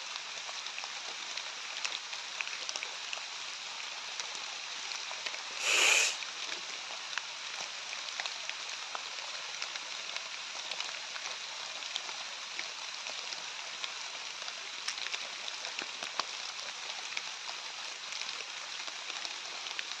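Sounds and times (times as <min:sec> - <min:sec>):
steady hiss: 0:03.6 - 0:07.9.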